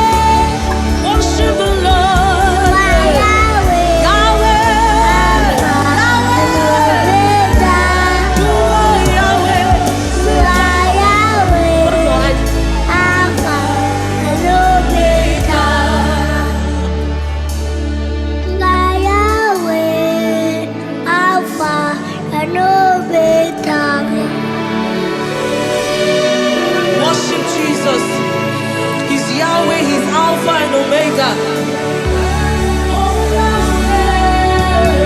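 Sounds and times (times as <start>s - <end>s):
child singing with vibrato: 0.0s - 16.8s, 18.5s - 24.7s
band with sustained bass: 0.0s - 21.0s, 24.0s - 35.0s.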